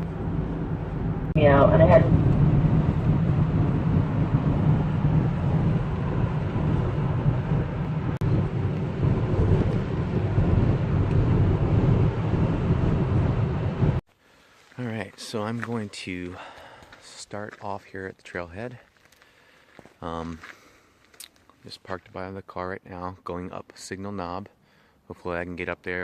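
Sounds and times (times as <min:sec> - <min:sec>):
engine and tyre drone: 0:00.0 - 0:14.0
wind and road hiss: 0:01.8 - 0:17.4.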